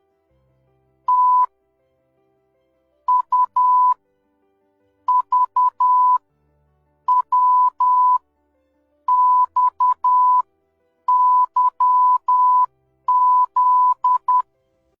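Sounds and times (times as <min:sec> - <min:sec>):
morse code beeps: 0:01.1 - 0:01.5, 0:03.1 - 0:04.0, 0:05.1 - 0:06.2, 0:07.1 - 0:08.2, 0:09.1 - 0:10.4, 0:11.1 - 0:14.4.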